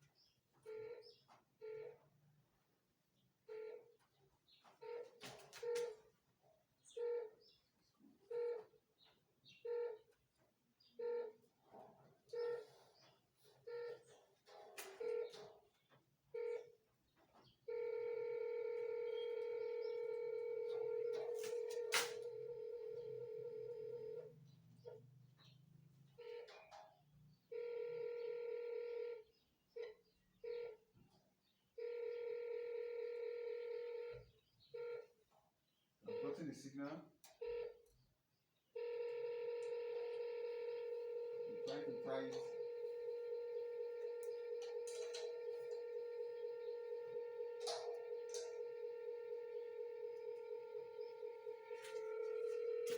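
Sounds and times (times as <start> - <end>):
satellite meter beeping: 17.7 - 24.3, 38.8 - 52.9.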